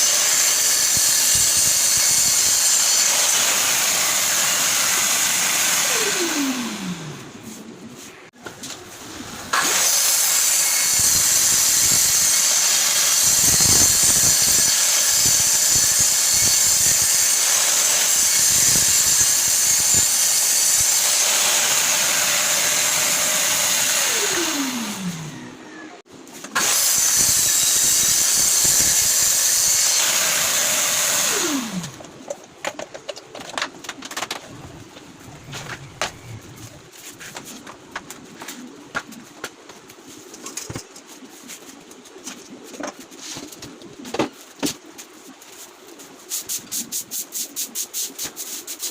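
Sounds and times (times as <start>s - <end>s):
power tool motor whine: 0.0s - 7.2s, 9.6s - 25.3s, 26.6s - 32.0s
power tool winding down: 0.0s - 7.2s, 9.5s - 25.3s, 26.6s - 32.0s.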